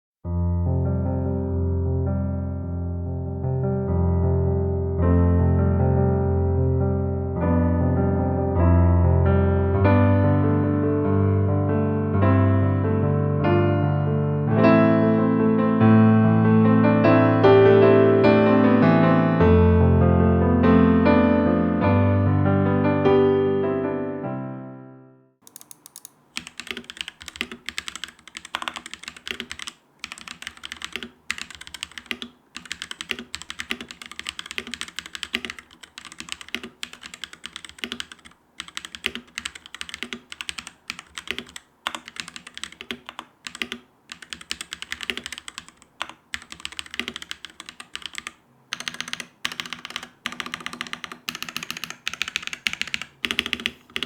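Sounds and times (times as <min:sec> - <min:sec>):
mechanical keyboard typing: 0:25.4 - 0:54.0.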